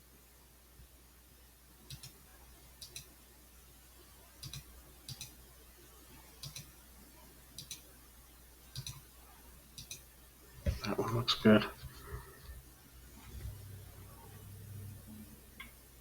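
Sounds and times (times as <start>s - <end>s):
faint low hum: 0.0s - 16.0s
computer mouse clicking: 1.9s - 2.2s, 2.8s - 3.1s, 4.4s - 5.4s, 6.4s - 6.8s, 7.6s - 7.9s, 8.7s - 9.1s, 9.8s - 10.9s.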